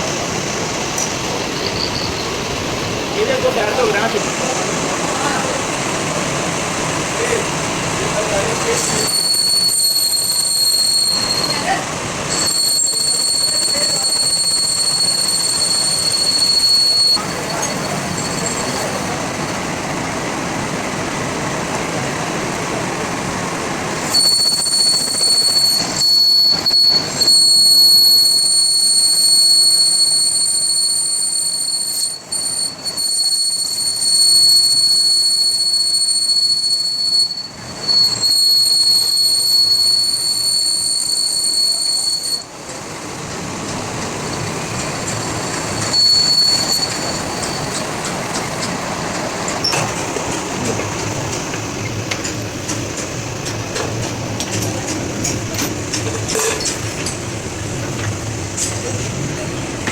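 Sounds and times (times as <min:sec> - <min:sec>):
high-pitched metallic whine: 0:00.0 - 0:05.7, 0:08.0 - 0:19.8, 0:23.9 - 0:42.8, 0:44.2 - 0:52.7
rushing mechanical noise: 0:00.0 - 0:59.9.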